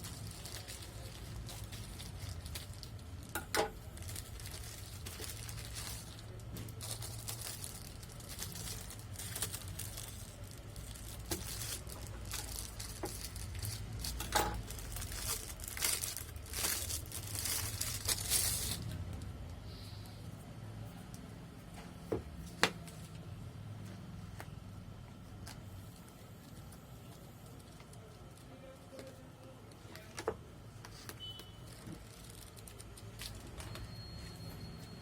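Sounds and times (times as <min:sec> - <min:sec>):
packaging torn and crinkled: 0:00.0 - 0:19.0, 0:31.7 - 0:33.6.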